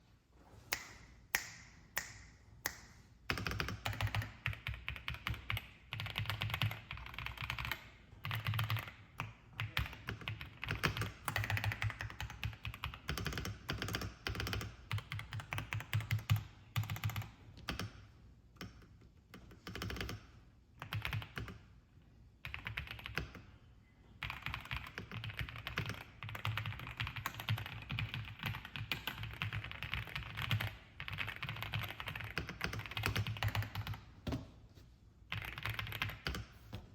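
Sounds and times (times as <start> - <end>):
mechanical keyboard typing: 3.3 - 18.0, 18.6 - 20.2, 20.8 - 21.6, 22.4 - 23.4, 24.2 - 34.0, 35.3 - 36.5.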